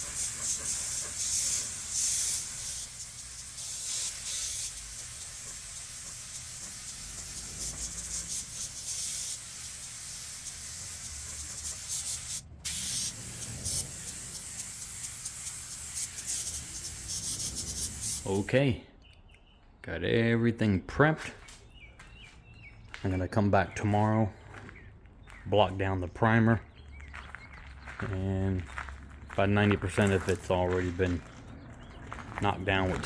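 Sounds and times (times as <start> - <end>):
spray gun hissing: 0.0 - 18.6.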